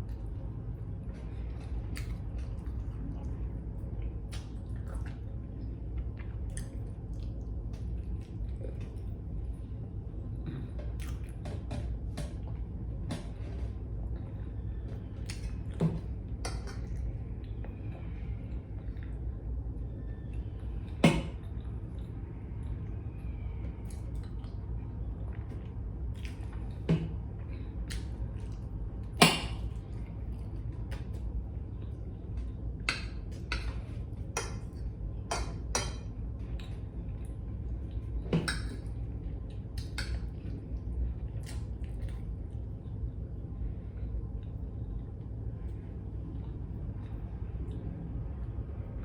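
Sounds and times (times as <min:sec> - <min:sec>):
steady low hum: 0:00.0 - 0:49.0.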